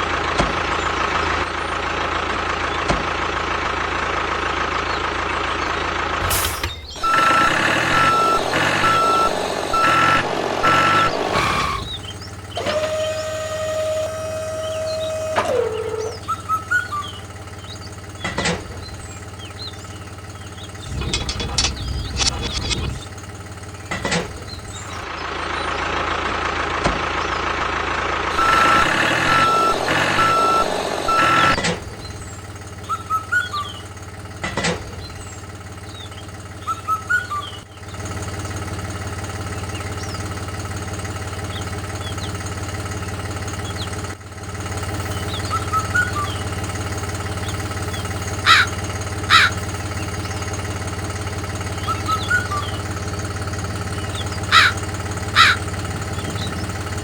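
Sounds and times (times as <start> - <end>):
small motor humming: 6.2 - 17.8, 20.6 - 23.1, 28.3 - 32.4, 44.8 - 50.8, 51.6 - 57.0
short beeps: 6.5 - 11.9, 28.4 - 31.6
sharp clicks: 20.8 - 23.1.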